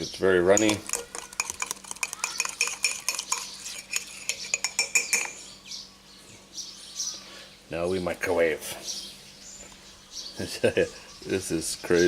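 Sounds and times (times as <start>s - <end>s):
fork clinking against mug: 0.5s - 5.4s.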